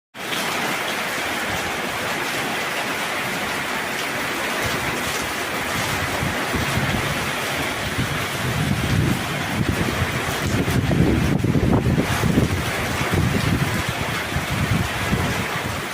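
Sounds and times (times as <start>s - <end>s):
heavy rain hissing: 0.2s - 15.9s
wind gusts on microphone: 3.3s - 15.9s.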